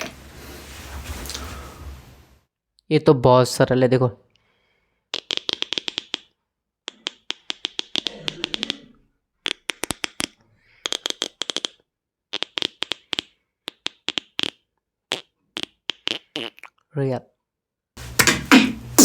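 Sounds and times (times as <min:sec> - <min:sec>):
beatbox mouth percussion clicks: 0:05.1 - 0:16.8, 0:18.2 - 0:19.0.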